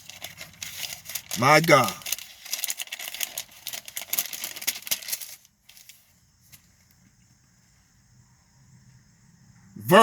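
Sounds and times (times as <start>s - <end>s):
thin pages rustling: 0.0s - 6.7s.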